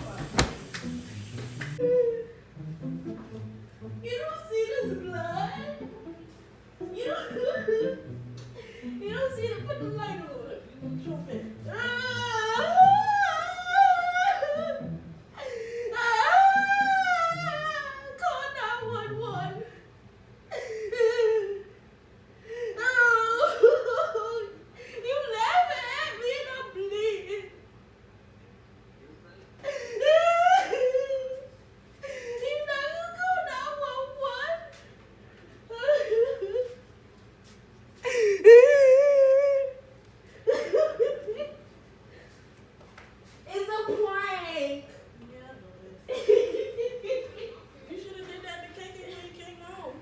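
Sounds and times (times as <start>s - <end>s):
high-pitched voice wailing: 38.1s - 39.8s
high-pitched wordless vocalizing: 38.1s - 39.8s.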